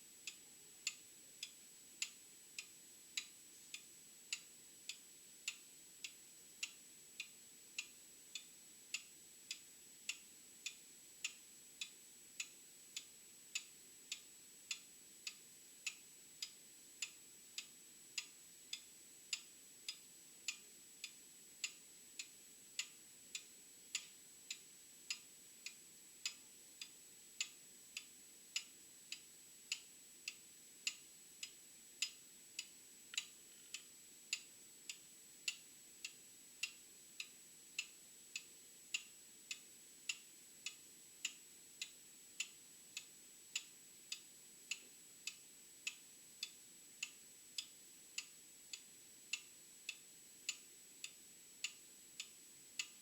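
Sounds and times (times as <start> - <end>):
mechanical clock ticking: 0.2 - 53.0.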